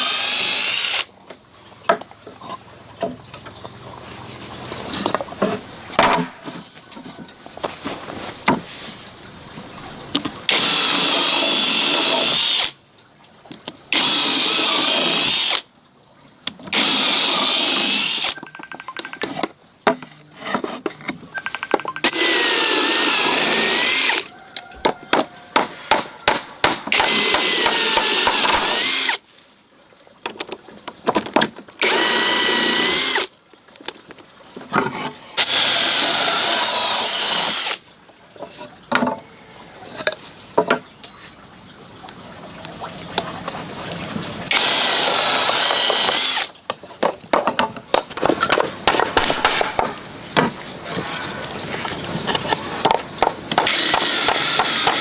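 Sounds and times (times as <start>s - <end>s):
power tool whining on wood: 0.0s - 1.1s, 10.5s - 12.8s, 13.9s - 15.6s, 16.7s - 18.4s, 22.0s - 24.3s, 26.9s - 29.2s, 31.8s - 33.3s, 35.4s - 37.8s, 44.5s - 46.6s, 53.6s - 55.0s.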